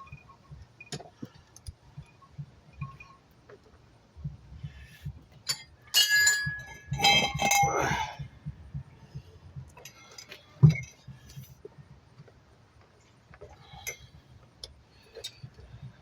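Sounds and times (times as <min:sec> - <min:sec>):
metal tools clinking: 0:05.5 - 0:08.2
ringing metallic clang: 0:06.0 - 0:08.2.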